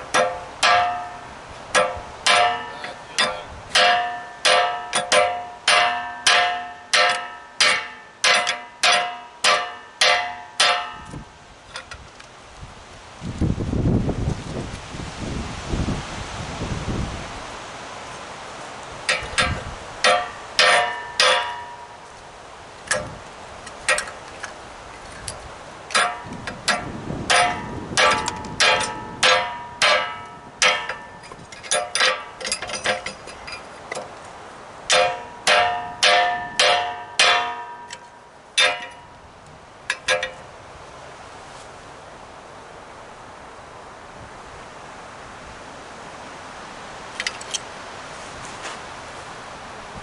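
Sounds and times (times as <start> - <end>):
hammer clanging on metal: 0.1 - 11.2, 19.1 - 22.0, 23.9 - 24.2, 25.9 - 34.1, 34.9 - 39.1, 39.9 - 40.4.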